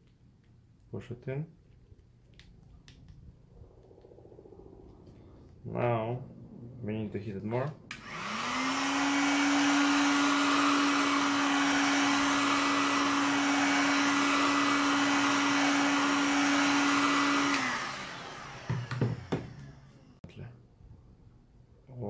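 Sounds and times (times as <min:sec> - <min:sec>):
hot-air blower running: 0:07.9 - 0:20.2.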